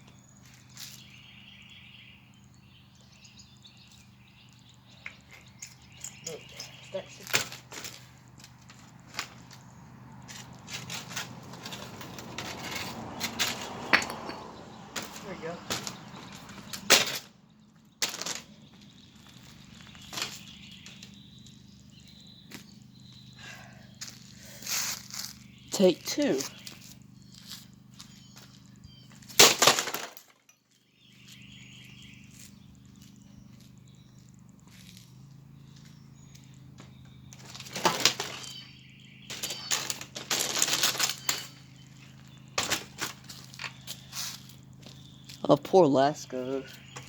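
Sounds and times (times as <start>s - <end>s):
objects rattling plastic fan: 18.0s - 18.6s, 37.4s - 38.6s, 39.3s - 44.8s.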